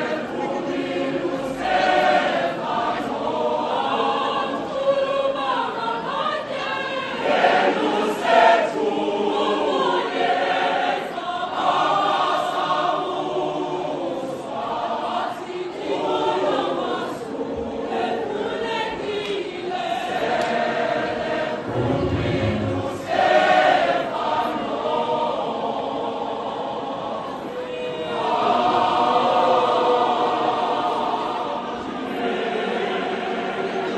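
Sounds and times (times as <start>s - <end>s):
choir singing in harmony: 0.0s - 33.9s
low thud: 21.6s - 23.3s.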